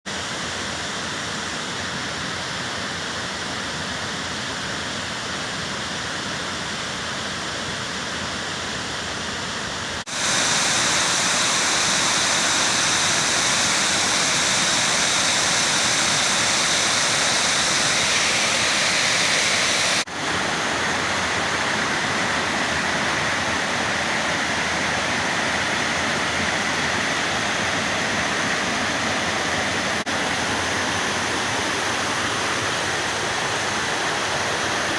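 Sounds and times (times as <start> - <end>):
waterfall rushing: 8.7 - 34.9.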